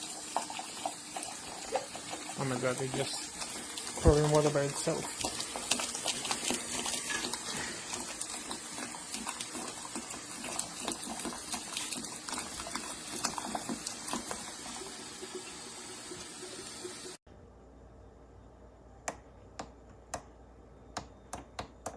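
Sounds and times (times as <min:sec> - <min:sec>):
hot water streaming and splashing: 0:00.0 - 0:17.2.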